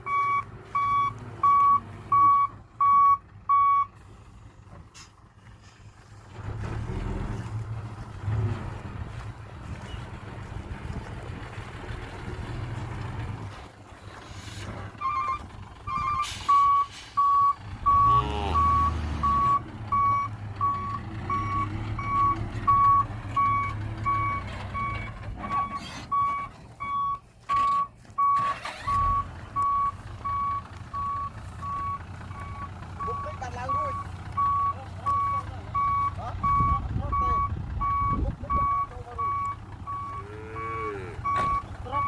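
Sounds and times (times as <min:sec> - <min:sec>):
truck reversing alarm beeping: 0:00.0 - 0:04.0, 0:15.0 - 0:42.0
diesel engine rumble: 0:00.0 - 0:42.0.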